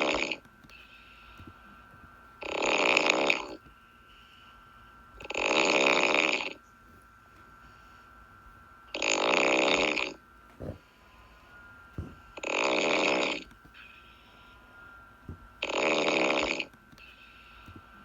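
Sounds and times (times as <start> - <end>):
person snoring: 0.0 - 0.4, 2.4 - 3.6, 5.2 - 6.6, 8.9 - 10.9, 12.4 - 13.5, 15.6 - 16.7.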